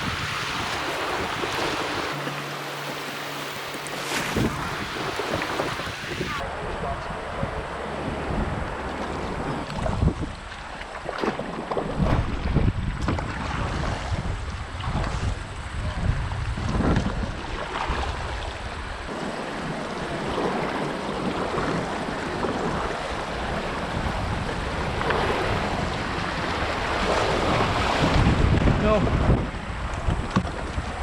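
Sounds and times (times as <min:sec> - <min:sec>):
river rushing through rapids: 0:00.0 - 0:06.6
wind buffeting microphone: 0:00.0 - 0:31.0.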